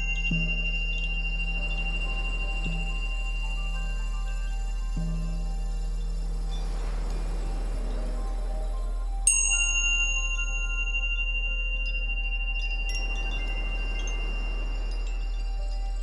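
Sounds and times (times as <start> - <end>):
high chimes ringing: 0.0 - 7.8, 9.1 - 16.0
soft wash of noise: 0.0 - 16.0
very low hum: 0.0 - 16.0.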